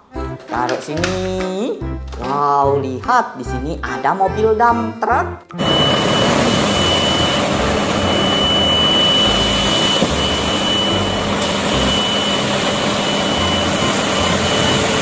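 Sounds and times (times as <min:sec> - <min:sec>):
thin high whine: 0:05.6 - 0:15.0
truck engine rushing: 0:05.6 - 0:15.0.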